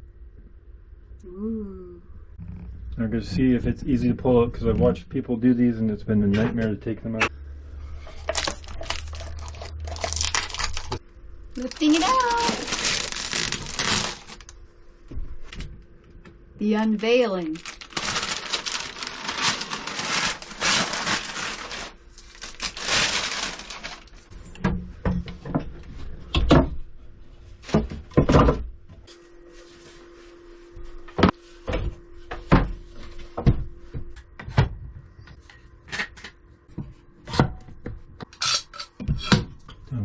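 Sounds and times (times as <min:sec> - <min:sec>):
faint steady hum: 0:00.0 - 0:40.0
rustling and crinkling: 0:07.9 - 0:11.0, 0:11.6 - 0:14.6, 0:16.8 - 0:24.3.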